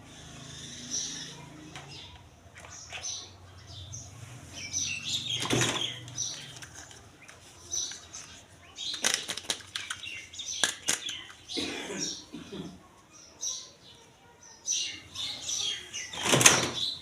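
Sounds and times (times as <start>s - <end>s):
toy parts clicking: 6.0s - 11.4s.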